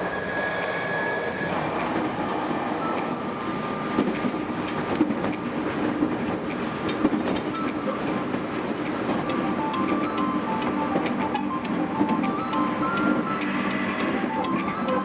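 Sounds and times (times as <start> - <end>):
train rumbling on rails: 0.0 - 15.0
wheels clicking: 4.0 - 15.0.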